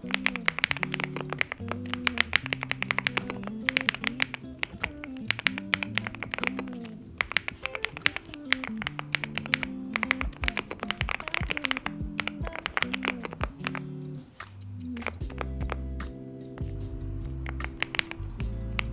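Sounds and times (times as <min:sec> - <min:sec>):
background guitar music: 0:00.0 - 0:18.9.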